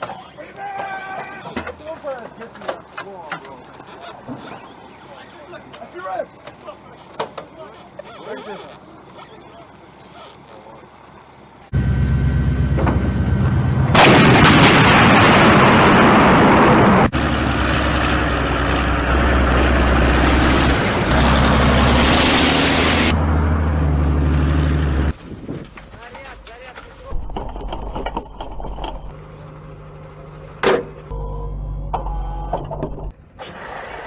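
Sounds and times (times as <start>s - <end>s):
heavy engine rumbling: 8.8s - 25.2s, 25.9s - 33.2s
loud rushing roar: 11.7s - 25.1s
artillery gun firing: 13.8s - 17.1s.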